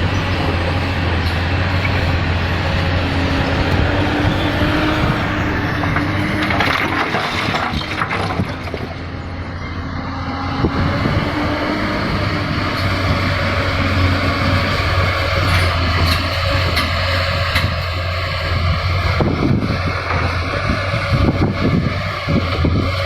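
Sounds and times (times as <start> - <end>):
excavator diesel engine running: 0.0 - 23.0
rock and soil crunching: 4.8 - 9.3.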